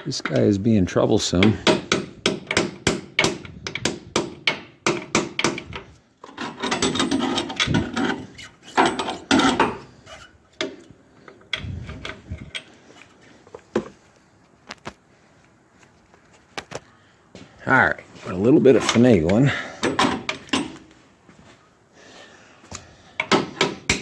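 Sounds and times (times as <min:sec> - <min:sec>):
metal part scraping: 0:05.6 - 0:13.6.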